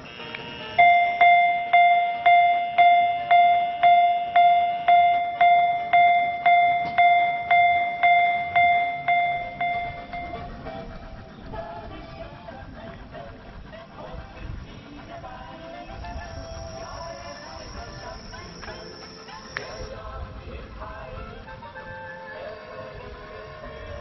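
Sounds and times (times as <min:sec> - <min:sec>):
level crossing bell dinging: 0:00.8 - 0:10.8.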